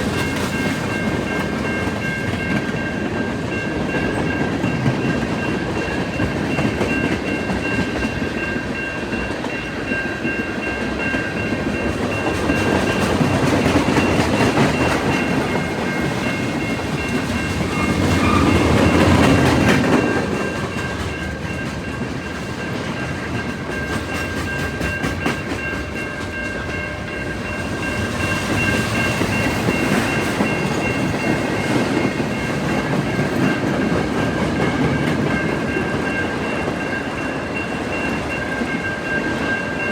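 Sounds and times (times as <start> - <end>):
train wheels clicking over rail joints: 0.0 - 39.4
train rolling past: 0.0 - 39.9.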